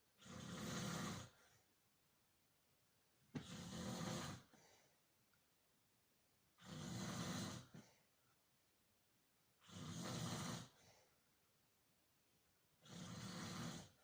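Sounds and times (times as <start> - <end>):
person snoring: 0.2 - 1.5, 3.4 - 4.6, 6.6 - 8.0, 9.6 - 10.8, 12.8 - 14.0
soft breath: 3.4 - 5.1, 9.8 - 11.4.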